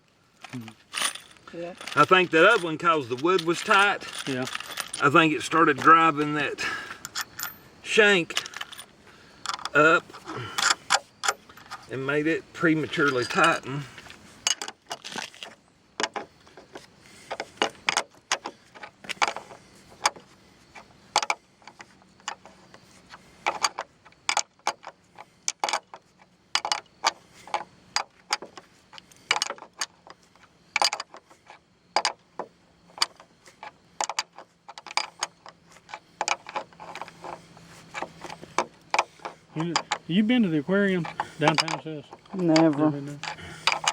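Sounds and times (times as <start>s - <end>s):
metal hardware clinking: 0.4s - 11.9s, 12.6s - 16.3s, 33.0s - 43.9s.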